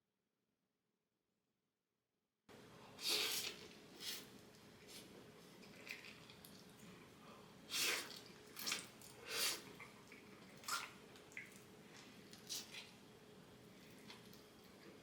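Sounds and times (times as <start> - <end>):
wet dripping and squishing: 5.6 - 7.0, 7.7 - 13.0.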